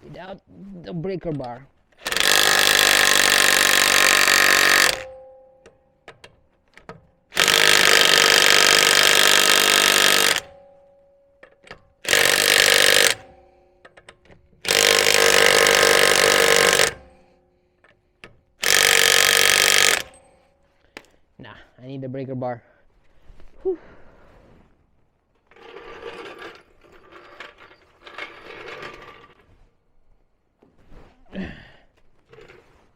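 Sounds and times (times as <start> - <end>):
impact wrench hammering: 2.0 - 17.2, 17.8 - 20.4.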